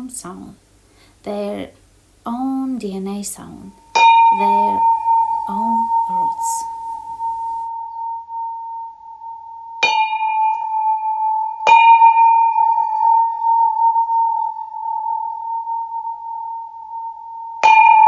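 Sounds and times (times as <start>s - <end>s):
bell ringing hum: 3.8s - 7.6s.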